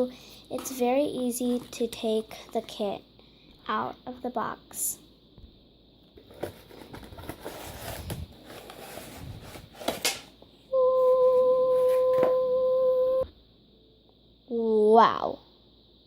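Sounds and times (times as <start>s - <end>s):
cardboard box rustling: 6.2s - 10.3s
loud steady beep tone: 10.7s - 13.3s.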